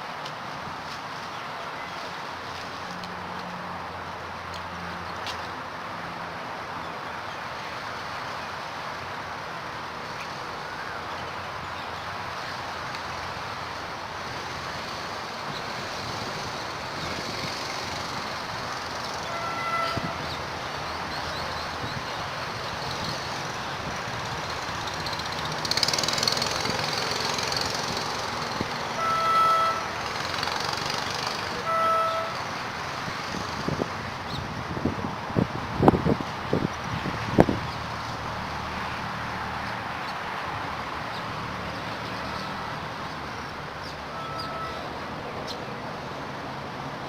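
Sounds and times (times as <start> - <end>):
road traffic noise: 0.0 - 47.0
vehicle horn toot: 19.2 - 20.4, 28.9 - 30.0, 31.6 - 32.4, 44.1 - 44.9.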